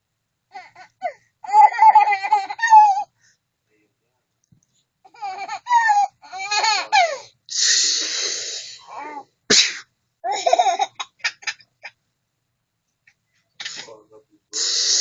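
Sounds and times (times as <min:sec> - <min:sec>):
baby laughing: 0:00.6 - 0:03.1, 0:05.1 - 0:07.2, 0:10.2 - 0:12.0
adult fake sneeze: 0:07.5 - 0:09.9, 0:13.6 - 0:14.0, 0:14.6 - 0:15.0.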